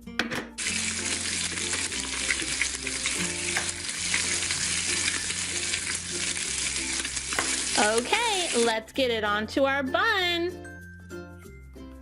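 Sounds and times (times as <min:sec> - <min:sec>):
burger sizzling: 0:00.6 - 0:08.7.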